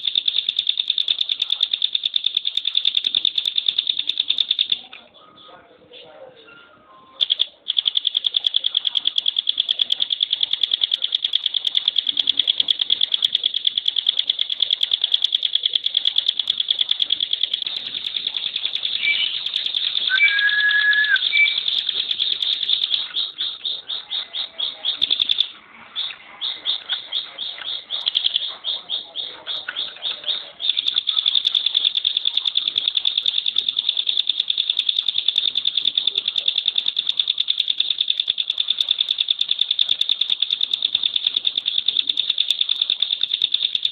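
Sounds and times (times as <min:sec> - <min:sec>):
bird rattling trill: 0:00.0 - 0:04.8, 0:07.2 - 0:43.9
short whistled bird notes: 0:19.0 - 0:19.4, 0:20.1 - 0:21.6.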